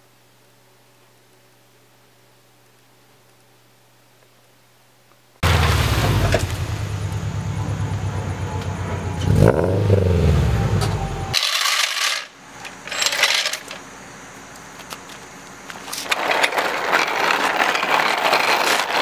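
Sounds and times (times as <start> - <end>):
car engine running and revving: 5.4 - 11.4.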